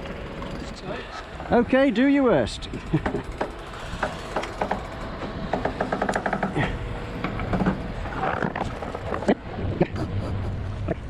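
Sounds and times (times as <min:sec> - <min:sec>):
rigging and hull creaking: 0:02.7 - 0:09.9.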